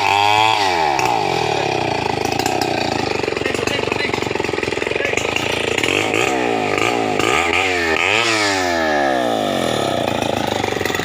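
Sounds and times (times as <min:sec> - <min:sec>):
chainsaw revving and idling: 0:00.0 - 0:11.0.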